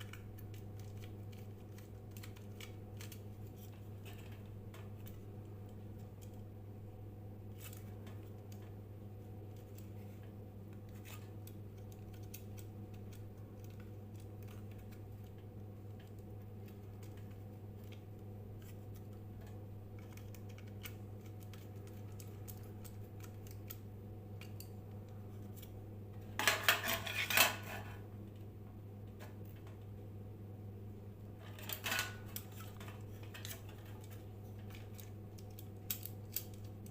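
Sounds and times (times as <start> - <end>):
low electrical hum: 0.0 - 36.9.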